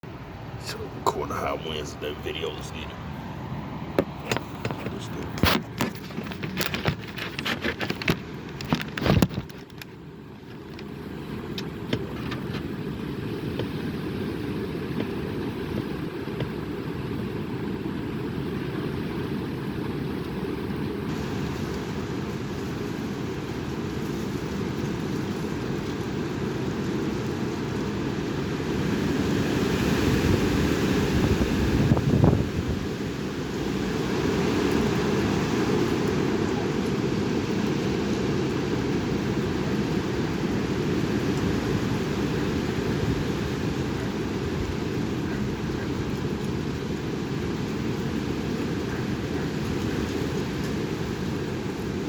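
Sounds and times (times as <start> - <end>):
crackles and knocks: 3.9 - 14.0
wind buffeting microphone: 28.8 - 52.0.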